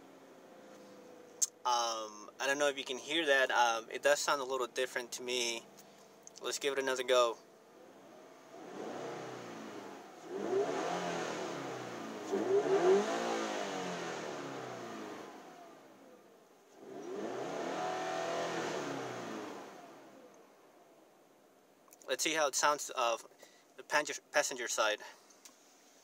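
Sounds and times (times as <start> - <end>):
car engine revving: 7.4 - 20.4.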